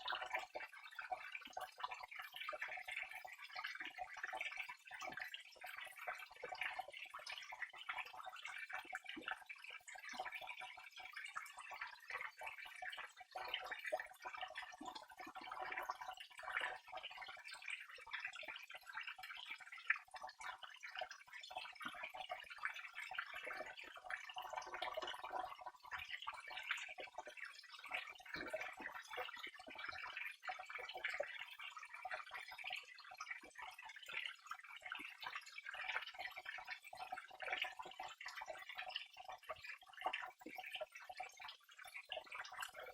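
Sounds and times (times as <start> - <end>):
drips and splashes: 0.0 - 42.9
water flowing and trickling: 0.0 - 42.9.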